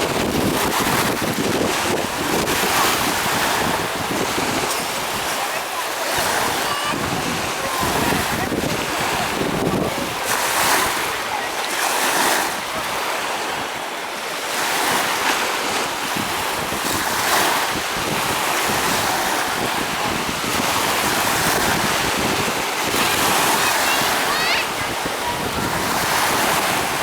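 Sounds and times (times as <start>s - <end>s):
waves washing onto shore: 0.0s - 27.0s
wind buffeting microphone: 0.0s - 27.0s.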